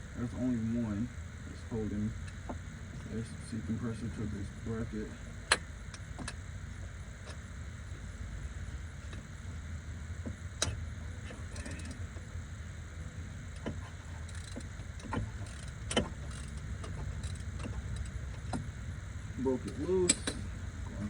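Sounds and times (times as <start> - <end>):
hand tools clicking on metal: 19.6 - 20.5.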